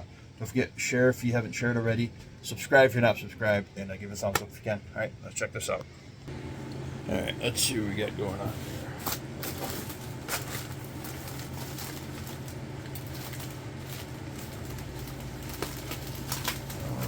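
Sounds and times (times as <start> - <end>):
steady low hum: 0.0 - 17.0
plastic packaging crinkling: 8.8 - 17.0.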